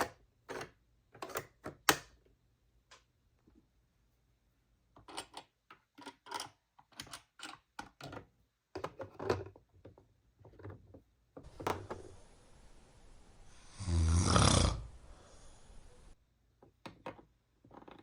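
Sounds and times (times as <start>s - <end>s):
plastic toy pieces clicking: 5.0s - 8.2s.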